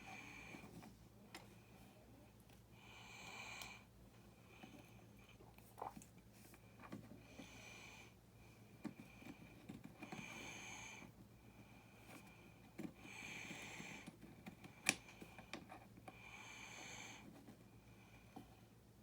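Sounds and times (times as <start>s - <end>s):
faint breathing: 7.0s - 18.8s.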